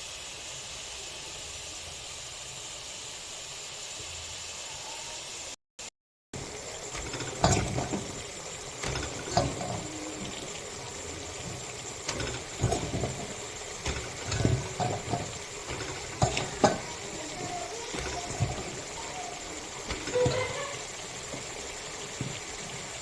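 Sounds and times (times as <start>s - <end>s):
kitchen utensils clattering: 6.4s - 23.0s
steady hiss: 6.4s - 23.0s.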